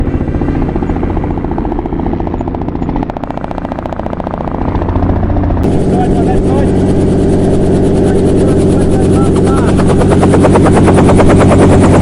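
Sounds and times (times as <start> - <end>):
engine running with rapid pulse: 0.0 - 12.0.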